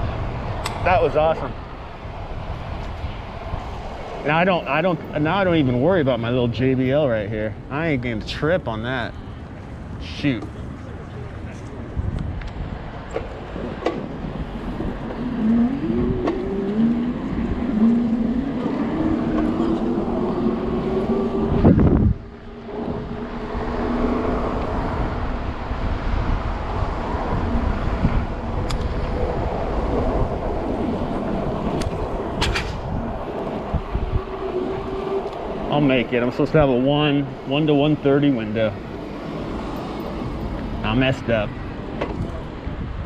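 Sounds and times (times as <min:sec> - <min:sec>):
wind and road noise: 0:00.0 - 0:43.0
engine accelerating through gears: 0:13.6 - 0:42.0.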